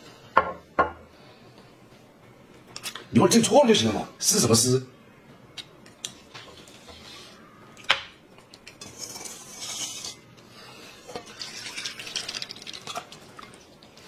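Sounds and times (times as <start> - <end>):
tableware clinking and scraping: 8.7 - 10.2.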